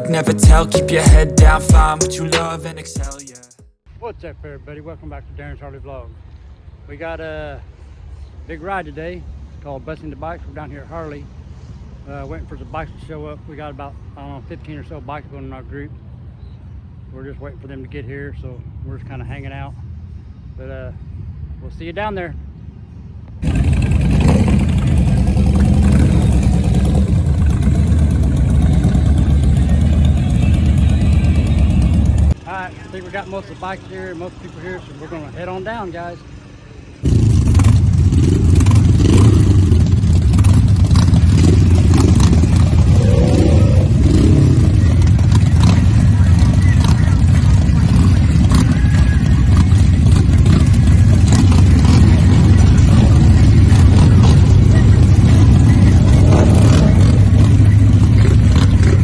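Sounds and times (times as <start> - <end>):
motorcycle engines running: 23.4 - 59.0.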